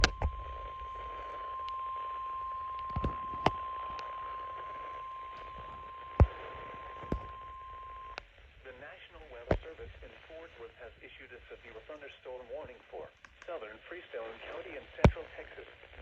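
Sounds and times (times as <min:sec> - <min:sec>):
weather radio alert beep: 0:00.0 - 0:08.2
static hiss: 0:00.0 - 0:16.0
static pops: 0:00.0 - 0:16.0.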